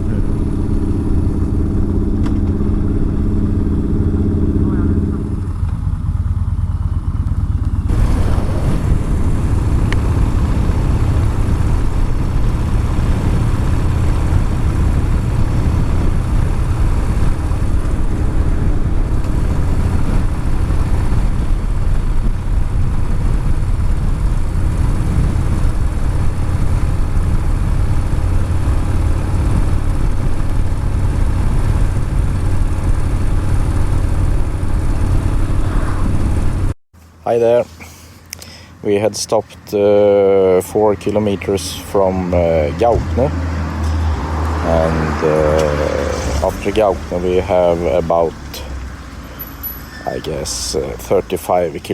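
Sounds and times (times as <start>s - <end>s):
motorcycle engine running: 0.0s - 37.6s, 39.8s - 51.9s
wind noise on microphone: 7.5s - 36.8s.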